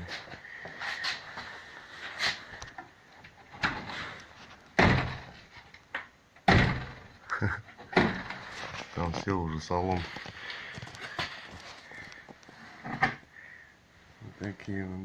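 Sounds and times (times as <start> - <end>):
door clicks and clunks: 3.5 - 4.0, 4.7 - 8.5
car door banging: 4.8 - 5.4, 6.4 - 7.1, 7.9 - 8.5.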